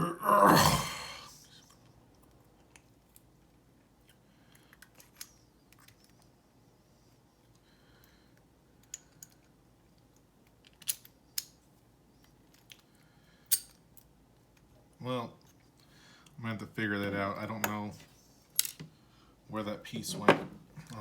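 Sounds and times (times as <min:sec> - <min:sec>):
small clicks of padlock parts: 0:04.0 - 0:06.3, 0:07.5 - 0:11.6, 0:12.2 - 0:14.7, 0:18.5 - 0:18.9.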